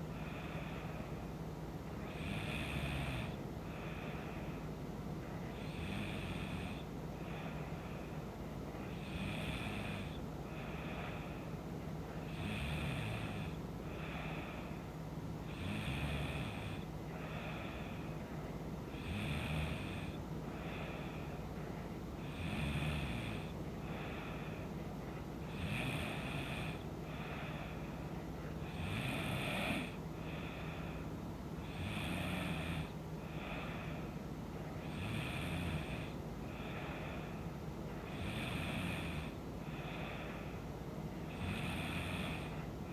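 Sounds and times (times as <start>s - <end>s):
steady low hum: 0.0s - 42.9s
woman snoring: 2.0s - 4.2s, 5.5s - 7.5s, 8.9s - 11.3s, 12.2s - 14.7s, 15.4s - 18.0s, 18.9s - 21.4s, 22.2s - 24.5s, 25.5s - 27.8s, 28.6s - 31.0s, 31.6s - 34.1s, 34.8s - 37.3s, 38.1s - 40.3s, 41.3s - 42.7s.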